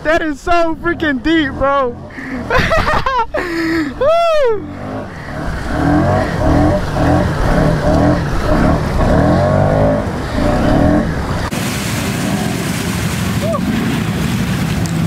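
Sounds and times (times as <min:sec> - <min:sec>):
atv engine revving: 0:00.6 - 0:13.0.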